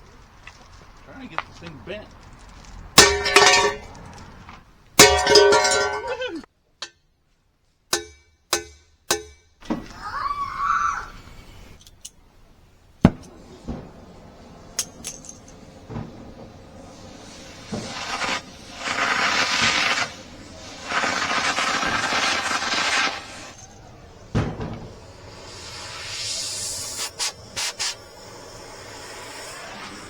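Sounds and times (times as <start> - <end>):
hammer striking metal tube: 3.0 - 3.9, 5.0 - 6.2, 7.9 - 9.6
steady hissing: 9.6 - 30.0.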